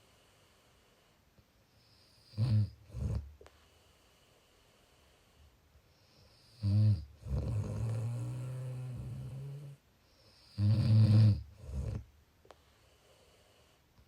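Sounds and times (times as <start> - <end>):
person snoring: 6.4 - 9.8, 10.4 - 12.0.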